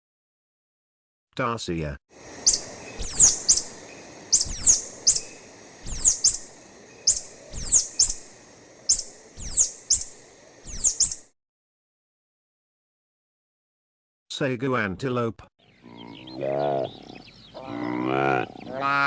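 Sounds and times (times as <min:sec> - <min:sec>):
high-pitched descending whistle calls: 0:02.5 - 0:03.7, 0:04.3 - 0:06.5, 0:07.1 - 0:08.2, 0:08.9 - 0:11.2.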